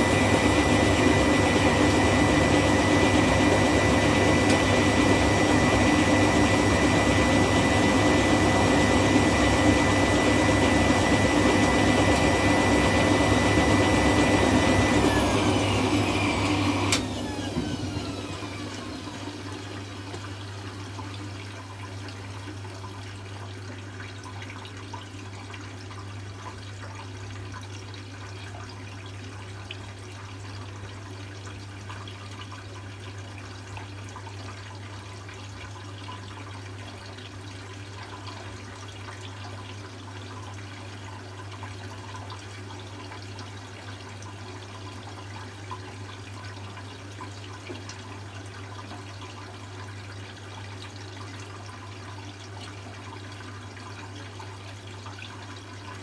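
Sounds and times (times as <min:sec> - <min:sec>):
water rushing into washing machine: 0:00.0 - 0:56.0.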